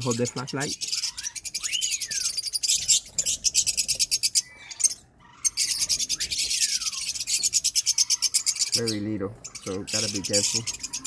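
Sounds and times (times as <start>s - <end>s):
lovebirds chirping: 0.0s - 11.0s
bird whistled call: 0.9s - 3.0s, 5.5s - 8.8s.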